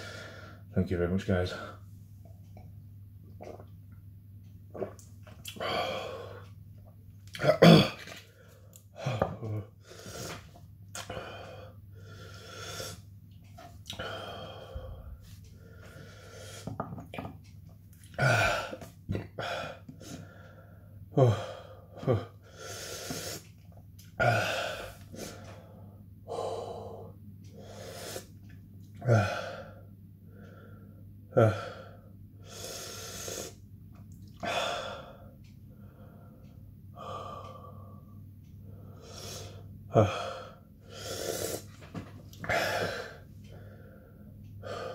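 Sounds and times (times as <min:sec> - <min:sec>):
man hiccuping: 0:07.3 - 0:08.0
man breathing hard: 0:14.0 - 0:16.7, 0:34.4 - 0:41.7, 0:42.4 - 0:44.9.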